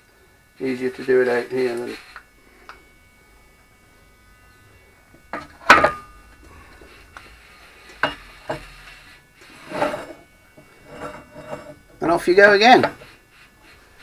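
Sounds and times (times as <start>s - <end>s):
metal scrape: 4.5s - 14.0s.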